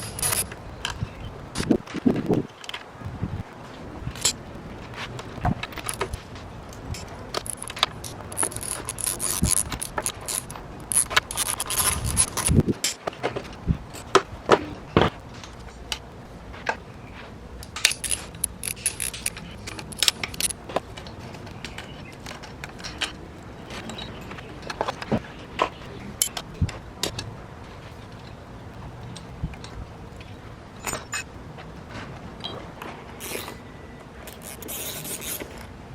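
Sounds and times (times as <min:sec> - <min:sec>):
hand tools clinking on metal: 0:00.0 - 0:00.6, 0:04.2 - 0:04.4, 0:06.8 - 0:13.0, 0:17.6 - 0:20.6.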